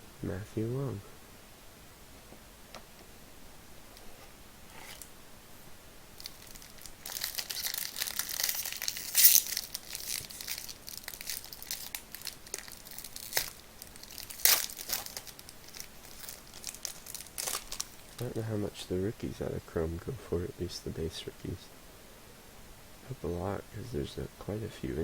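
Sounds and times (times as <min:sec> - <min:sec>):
foil wrapper tearing and crinkling: 0:06.2 - 0:18.4.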